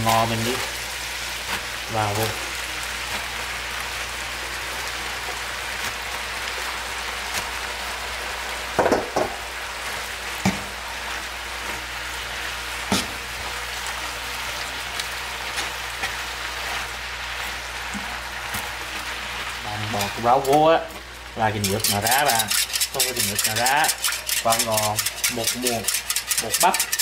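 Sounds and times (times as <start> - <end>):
food sizzling in a frying pan: 0.0 - 27.0
utensil knocking against pan: 8.8 - 9.4.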